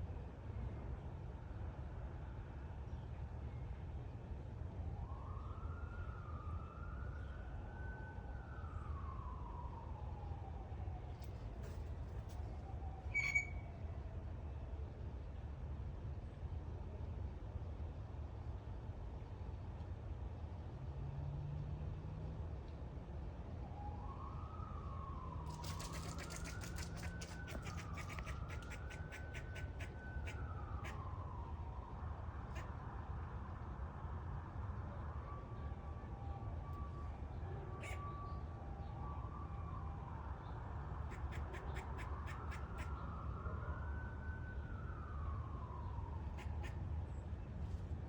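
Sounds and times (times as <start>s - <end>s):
siren wailing: 7.8s - 11.8s, 12.6s - 14.0s, 23.6s - 33.1s, 35.0s - 47.1s
squirrel barking chatter: 25.5s - 31.0s, 37.8s - 38.1s, 41.0s - 42.9s, 46.3s - 46.8s.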